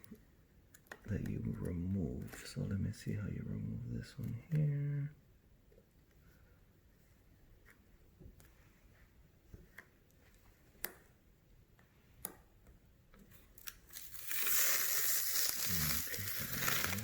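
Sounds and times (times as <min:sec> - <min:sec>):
light plastic clicks and taps: 0:00.0 - 0:02.5
plastic film peeling off: 0:13.5 - 0:17.0.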